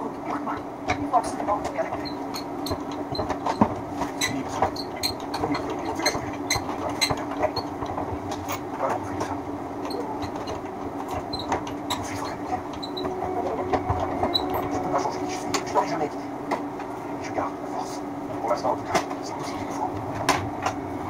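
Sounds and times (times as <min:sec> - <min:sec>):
machine rattling and clicking: 0:01.7 - 0:13.1
wire stripping machine humming: 0:01.8 - 0:17.2.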